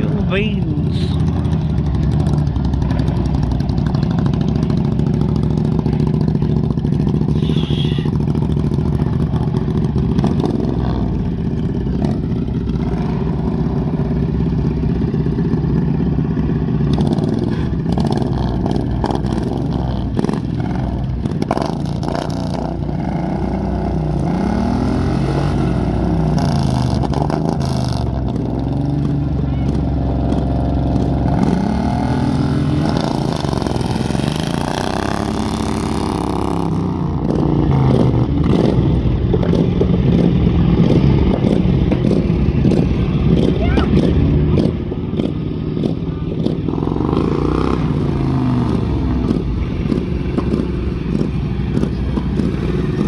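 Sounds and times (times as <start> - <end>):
tractor engine running: 0.0 - 53.0.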